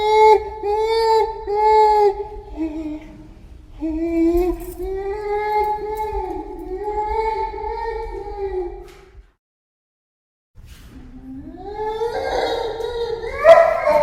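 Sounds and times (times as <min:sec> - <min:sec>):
gorilla whining calls: 0:11.7 - 0:14.0.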